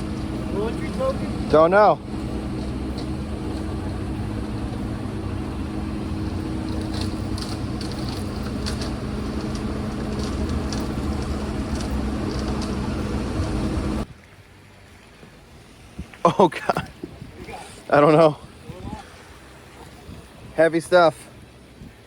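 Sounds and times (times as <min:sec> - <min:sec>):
motor humming: 0:00.0 - 0:14.1.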